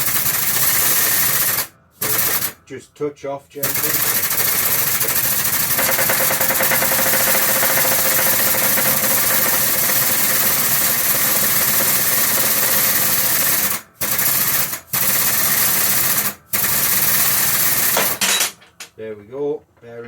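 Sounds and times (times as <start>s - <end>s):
air hydraulic jack pumping: 0.0s - 2.6s.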